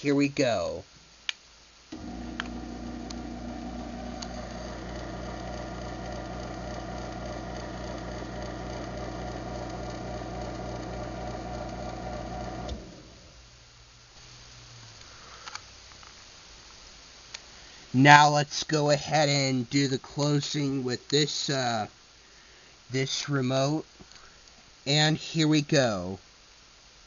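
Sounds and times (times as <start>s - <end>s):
motor start click: 1.9s - 13.2s
garage door opener motor hum: 1.9s - 13.4s.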